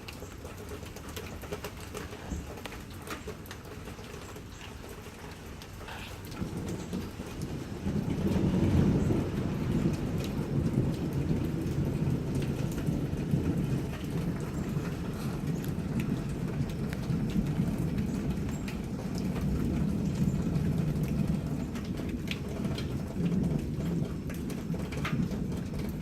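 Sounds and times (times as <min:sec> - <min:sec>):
rain falling: 0:00.0 - 0:26.0
distant thunder rumble: 0:01.3 - 0:26.0.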